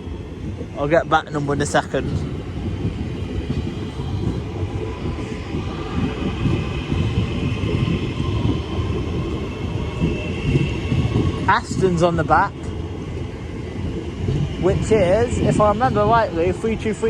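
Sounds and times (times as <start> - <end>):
train wheels rumbling: 0.0 - 17.0.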